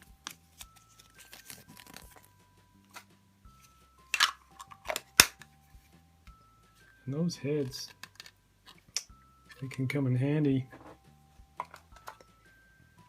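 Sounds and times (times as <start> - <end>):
packaging crinkling: 0.2 - 2.3.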